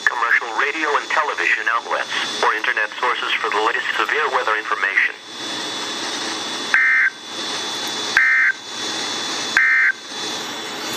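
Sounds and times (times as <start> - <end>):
radio hiss: 0.0 - 6.6.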